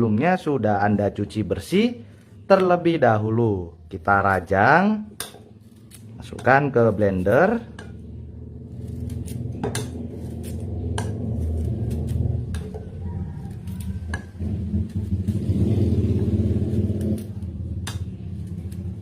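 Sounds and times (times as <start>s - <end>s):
steady low hum: 3.8s - 19.0s
fruit being cut: 4.2s - 19.0s.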